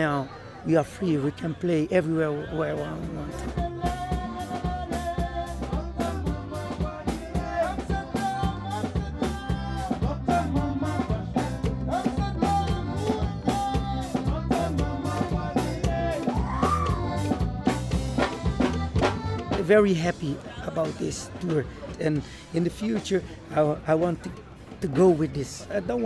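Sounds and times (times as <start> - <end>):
accordion melody: 2.5 - 21.6
drums and percussion beat: 2.8 - 26.0.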